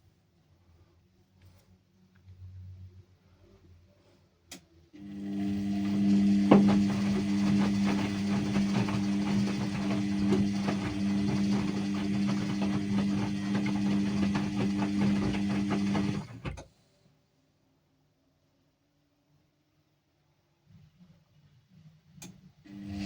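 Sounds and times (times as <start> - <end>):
washing machine running: 5.0 - 16.7, 22.7 - 23.0.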